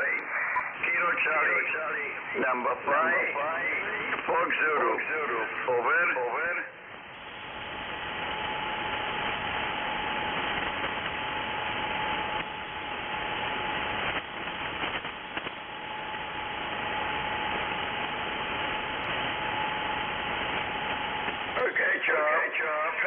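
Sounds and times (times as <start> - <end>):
radio band noise hiss: 0.0 - 23.0.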